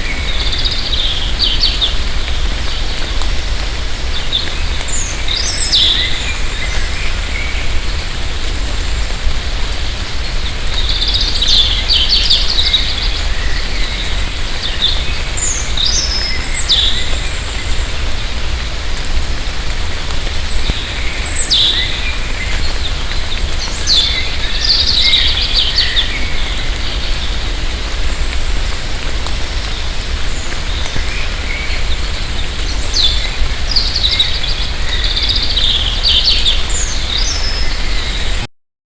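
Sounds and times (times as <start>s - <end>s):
light rain falling: 0.0s - 38.5s
birds whistling and chirping: 0.1s - 2.0s, 4.2s - 7.6s, 10.7s - 17.7s, 20.7s - 22.7s, 23.6s - 27.3s, 30.3s - 38.4s.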